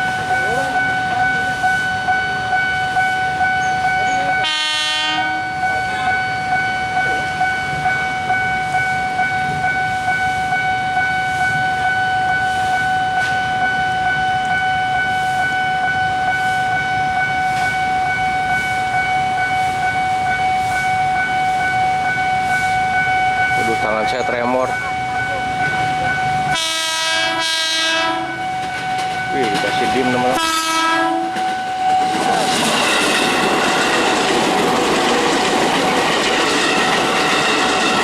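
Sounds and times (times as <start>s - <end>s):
level crossing warning bell: 0.0s - 38.0s
train horn blast: 3.6s - 6.1s, 26.4s - 28.6s, 30.1s - 32.2s.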